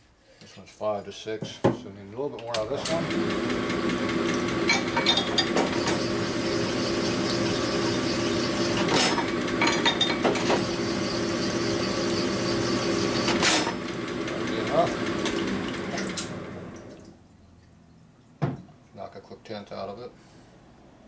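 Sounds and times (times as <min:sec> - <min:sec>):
honing machine running: 0:02.7 - 0:16.7.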